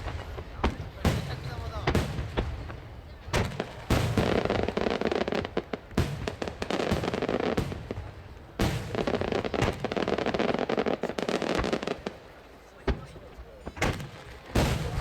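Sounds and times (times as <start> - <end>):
firework booms: 0.0 - 12.2, 12.8 - 15.0
crackling firework bursts: 0.0 - 15.0.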